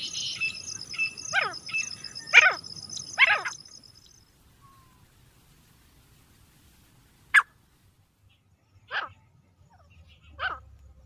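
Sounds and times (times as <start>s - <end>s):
high insect trill: 0.0s - 4.3s
francolin harsh calls: 0.0s - 5.0s.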